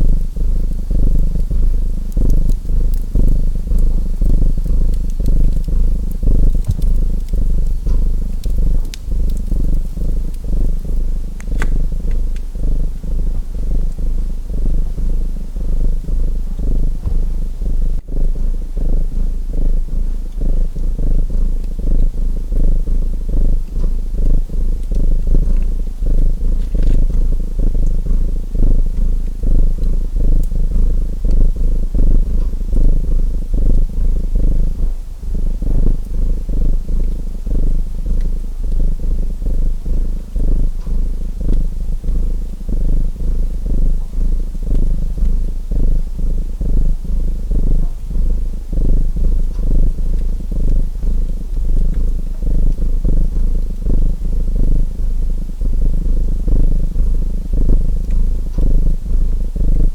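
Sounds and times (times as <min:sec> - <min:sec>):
wood fire crackles: 0:00.0 - 0:18.4
cat purring loudly: 0:00.0 - 0:59.9.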